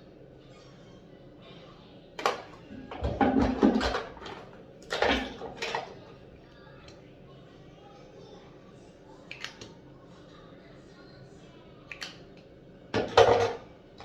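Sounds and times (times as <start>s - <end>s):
dishes clattering: 2.2s - 6.0s, 13.0s - 13.7s.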